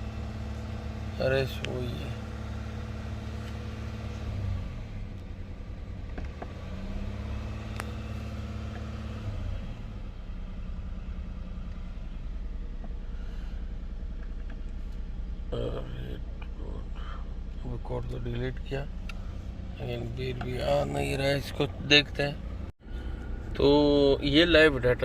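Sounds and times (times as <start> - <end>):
car engine idling: 0.0 - 25.0.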